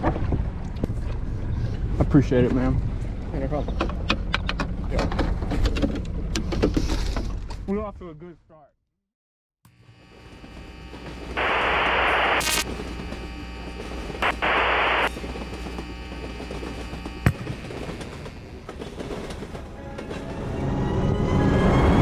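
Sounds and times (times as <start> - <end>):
loud hissing noise bursts: 10.5 - 12.8, 14.2 - 18.9
music: 19.7 - 22.0.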